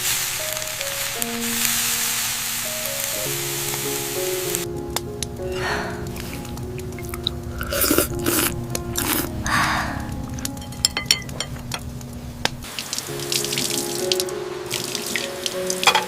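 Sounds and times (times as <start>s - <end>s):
soft background music: 0.0s - 16.0s
water splashing in a sink: 12.6s - 15.4s.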